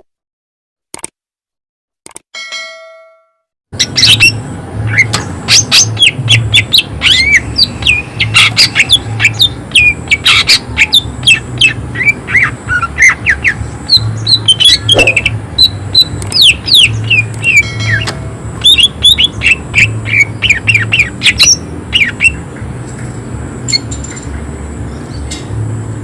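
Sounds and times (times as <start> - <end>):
bird singing rapid whistles: 3.8 - 22.4.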